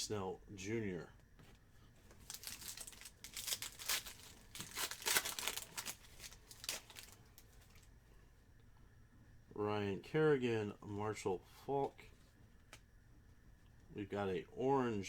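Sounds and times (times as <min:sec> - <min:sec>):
foil wrapper crinkling and tearing: 0:02.0 - 0:07.9.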